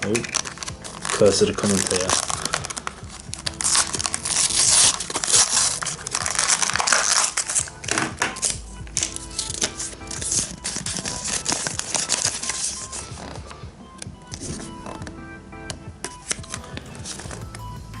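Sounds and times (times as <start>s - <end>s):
plastic packaging crackling: 0.0s - 13.5s
background music: 0.0s - 18.0s.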